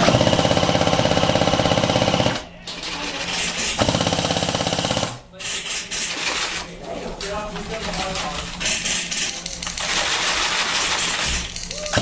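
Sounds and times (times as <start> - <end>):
airsoft gun firing bursts: 0.0 - 5.2, 8.9 - 12.0.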